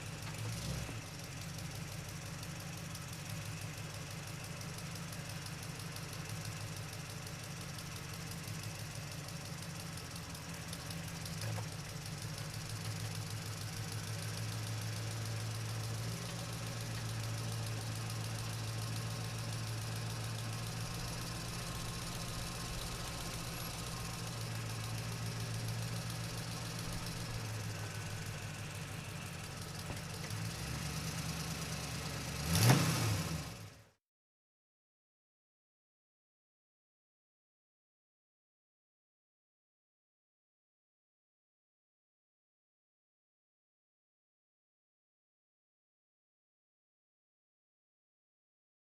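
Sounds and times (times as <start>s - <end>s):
truck engine running: 0.0s - 32.6s.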